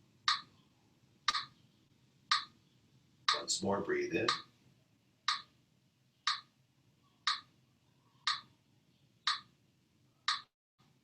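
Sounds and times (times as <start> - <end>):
steady sharp ticking clicks: 0.2 - 0.5, 1.2 - 1.6, 2.3 - 2.6, 3.2 - 3.6, 4.2 - 4.5, 5.2 - 5.6, 6.2 - 6.6, 7.2 - 7.5, 8.2 - 8.5, 9.2 - 9.6, 10.2 - 10.5.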